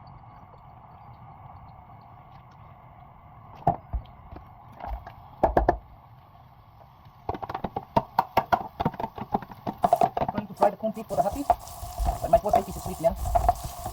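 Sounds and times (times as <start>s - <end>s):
spatula stirring food in pan: 9.2s - 13.9s.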